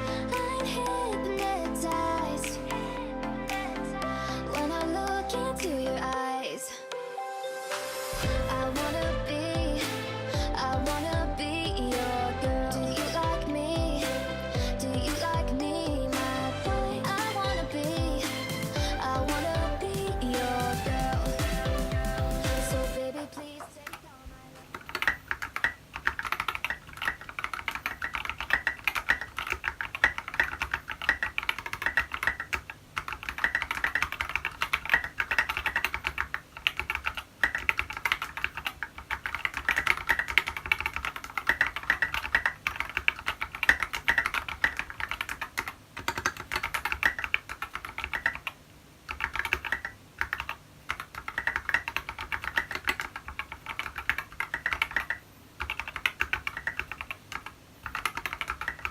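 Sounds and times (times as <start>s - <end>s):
fast mechanical keyboard typing: 23.4s - 58.9s.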